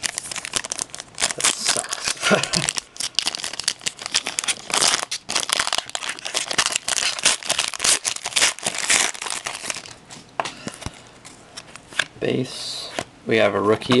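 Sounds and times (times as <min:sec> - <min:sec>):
foil wrapper crinkling and tearing: 0:00.0 - 0:10.0.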